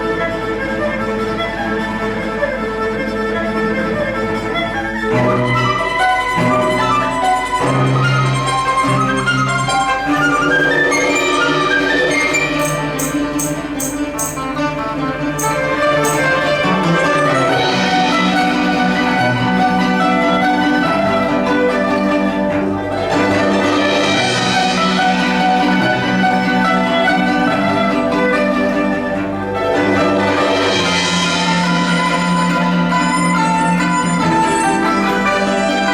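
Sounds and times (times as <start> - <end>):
chamber ensemble playing: 0.0 - 35.9
sharp struck notes: 6.3 - 19.9.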